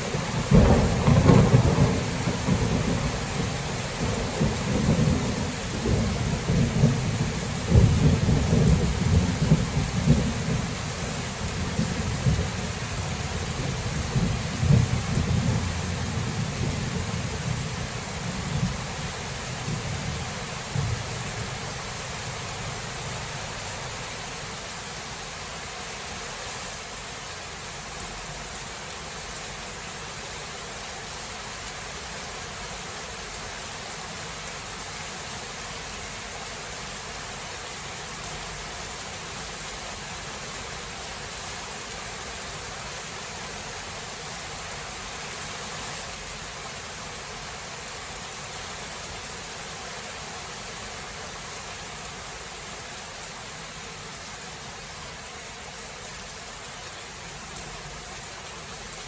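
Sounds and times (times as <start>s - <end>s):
heavy rain hissing: 0.0s - 59.0s
low thunder rumble: 0.2s - 10.8s.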